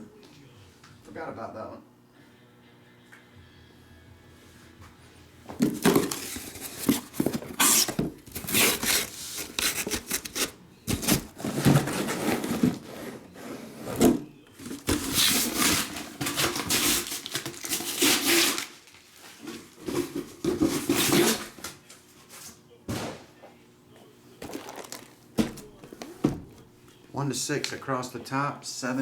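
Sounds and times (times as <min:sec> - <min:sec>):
rustling of card packaging: 0:05.6 - 0:21.6, 0:24.4 - 0:26.2.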